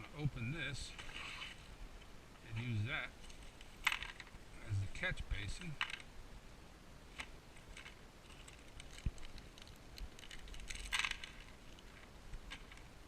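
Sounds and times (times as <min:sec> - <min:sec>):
small screws and plastic parts rattling: 0:02.6 - 0:04.4, 0:07.2 - 0:13.0.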